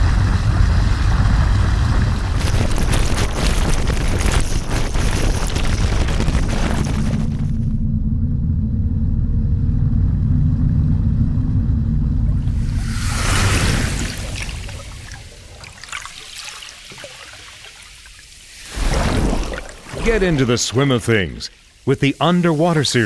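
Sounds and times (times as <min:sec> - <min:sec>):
boat motor drone underwater: 0:00.0 - 0:04.0, 0:05.6 - 0:16.1
underwater crackling and fizzing: 0:00.2 - 0:07.6, 0:12.5 - 0:23.0.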